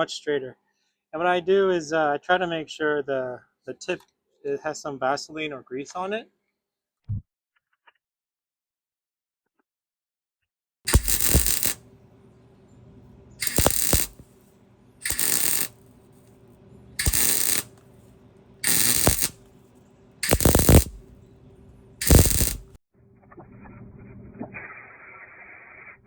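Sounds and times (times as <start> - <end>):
faint steady hum: 10.9 - 22.8
welder bursts: 10.9 - 22.8.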